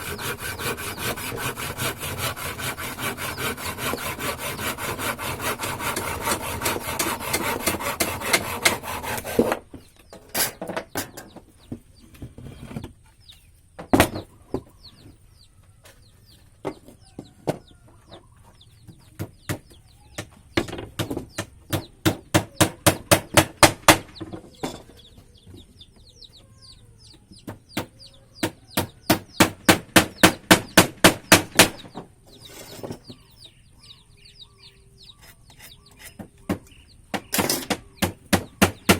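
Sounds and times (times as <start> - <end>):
saw cutting wood: 0.0 - 9.7.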